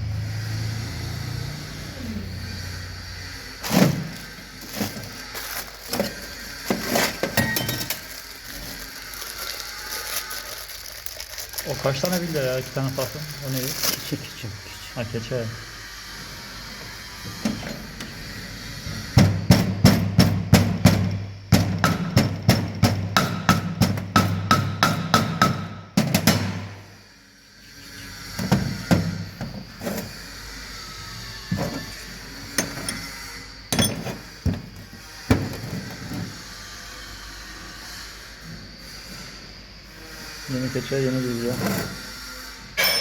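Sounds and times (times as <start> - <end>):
hammer striking metal: 23.2 - 26.6, 42.8 - 43.0.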